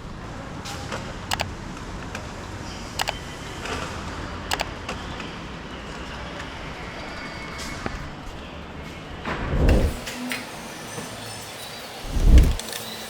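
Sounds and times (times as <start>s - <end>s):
traffic noise: 0.0s - 10.0s, 12.0s - 12.6s
sharp metallic clicks: 3.0s - 3.2s, 4.5s - 4.8s, 12.0s - 12.6s
workshop noise: 12.0s - 12.6s.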